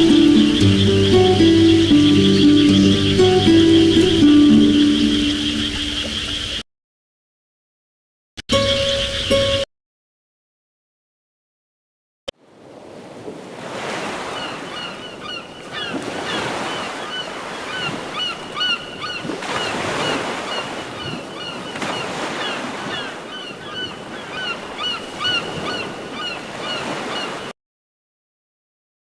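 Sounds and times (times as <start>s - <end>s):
chirping bird calls: 0.0s - 6.6s, 8.5s - 9.7s, 14.2s - 27.5s
ocean surf washing: 0.0s - 6.6s, 12.4s - 27.5s.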